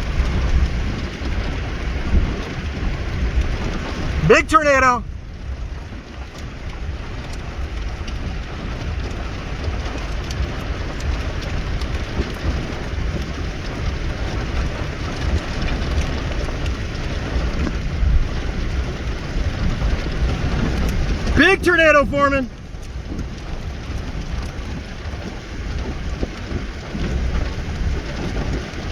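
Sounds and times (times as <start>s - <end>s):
low thunder rumble: 0.0s - 4.3s, 5.0s - 21.4s
steady rain: 0.0s - 28.9s
wind: 0.0s - 28.9s.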